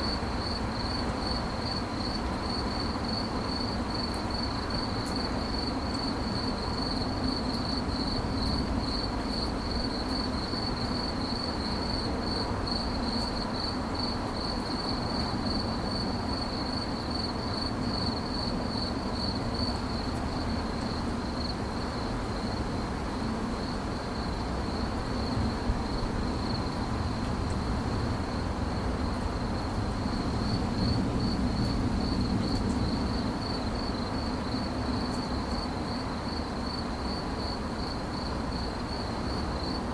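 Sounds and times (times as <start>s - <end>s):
cricket trilling: 27.9s - 39.8s.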